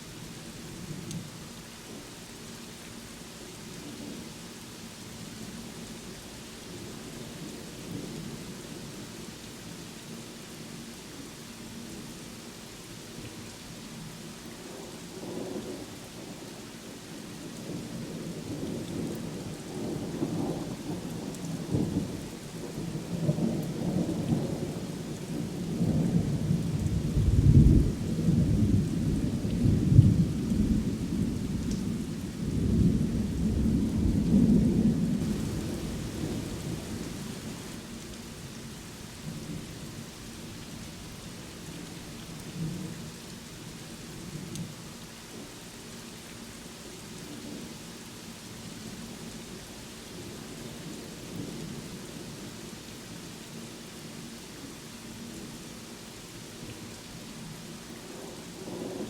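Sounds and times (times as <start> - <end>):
steady rain: 0.0 - 59.0
rolling thunder rumble: 25.8 - 37.8.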